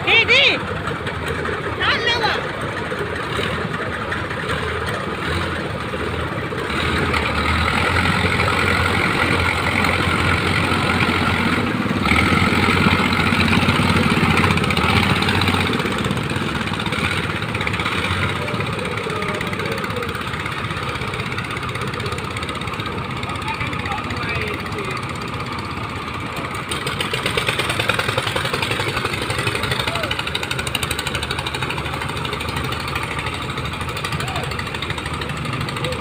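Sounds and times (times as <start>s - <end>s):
boat engine running: 0.0s - 36.0s.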